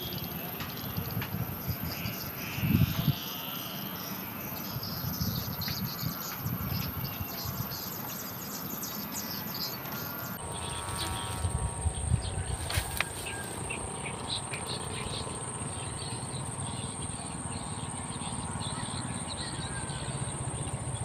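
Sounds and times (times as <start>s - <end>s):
high-pitched insect whine: 0.0s - 21.0s
insects chirping: 0.0s - 21.0s
low rumbling noise: 9.6s - 21.0s.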